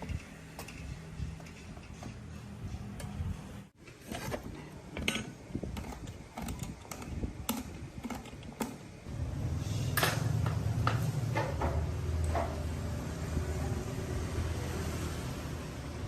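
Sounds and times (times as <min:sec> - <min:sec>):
tools and metal parts clinking: 0:00.0 - 0:03.2, 0:03.9 - 0:08.8.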